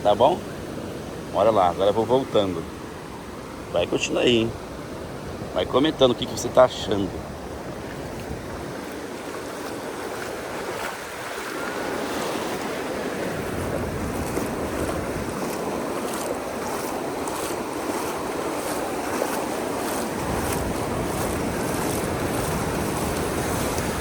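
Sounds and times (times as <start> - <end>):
waves breaking on beach: 0.0 - 24.0.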